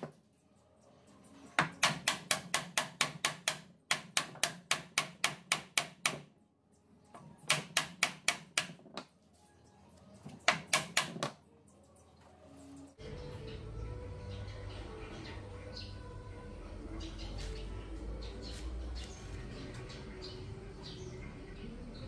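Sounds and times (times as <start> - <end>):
hammer striking wood: 1.6 - 6.3, 7.4 - 9.1, 10.4 - 11.4.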